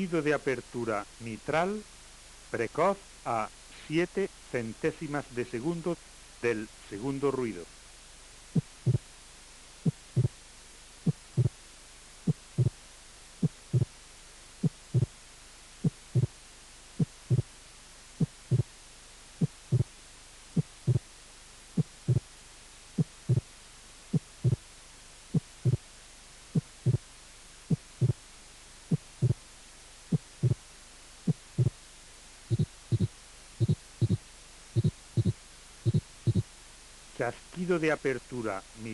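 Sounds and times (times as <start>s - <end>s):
heartbeat through stethoscope: 8.6s - 9.1s, 9.8s - 10.4s, 11.0s - 11.6s, 12.3s - 12.8s, 13.4s - 14.0s, 14.6s - 15.2s, 15.8s - 16.4s, 17.0s - 17.5s, 18.2s - 18.8s, 19.4s - 20.0s, 20.6s - 21.1s, 21.7s - 22.3s, 22.9s - 23.5s, 24.1s - 24.7s, 25.3s - 25.9s, 26.5s - 27.1s, 27.7s - 28.2s, 28.9s - 29.4s, 30.1s - 30.6s, 31.2s - 31.8s, 32.5s - 36.5s.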